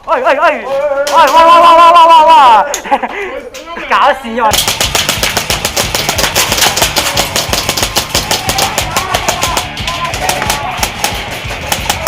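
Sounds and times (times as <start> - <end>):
fast sharp clicks: 4.5 - 12.0.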